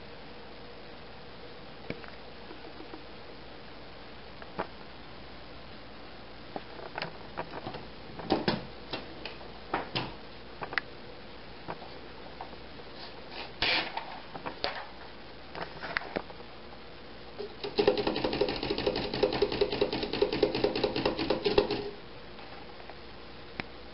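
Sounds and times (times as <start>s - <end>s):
manual typewriter keystrokes clacking: 17.6s - 21.9s.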